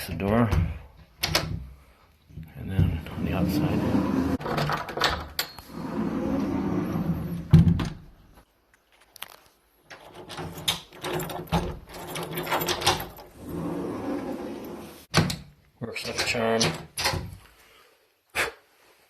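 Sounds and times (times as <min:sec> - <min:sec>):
door lock clicks and rattles: 0:01.2 - 0:01.6, 0:04.4 - 0:05.6, 0:09.8 - 0:13.3, 0:15.1 - 0:17.3
sliding door rolling on track: 0:03.2 - 0:05.0, 0:05.7 - 0:07.5, 0:13.3 - 0:15.1.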